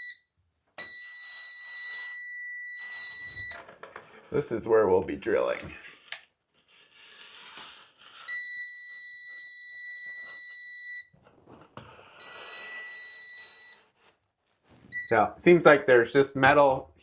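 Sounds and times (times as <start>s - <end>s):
stud finder high alert tone: 0.0s - 0.2s
scanner scraping over wood: 11.2s - 14.9s.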